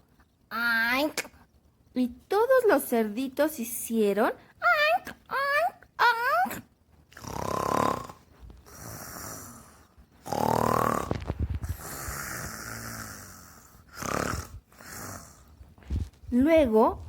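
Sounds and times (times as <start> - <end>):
woman imitating snoring: 7.1 - 15.5.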